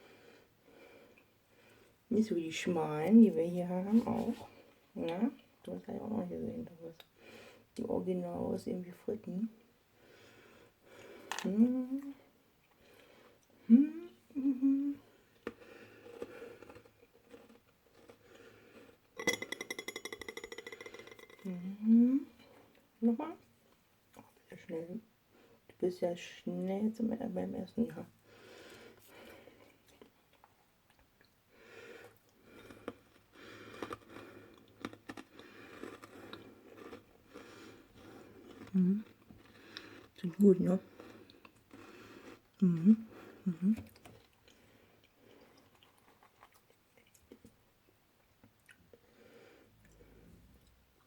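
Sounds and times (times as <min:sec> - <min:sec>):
person humming: 0:11.4 - 0:12.2, 0:13.6 - 0:15.1, 0:21.5 - 0:22.4, 0:42.6 - 0:43.9
chewing fries: 0:15.3 - 0:19.2, 0:28.5 - 0:49.1.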